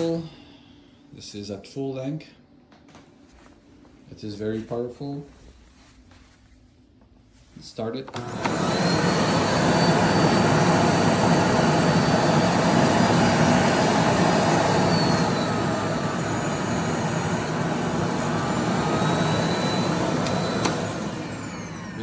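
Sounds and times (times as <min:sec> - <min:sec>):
vacuum cleaner running: 0:08.1 - 0:22.0.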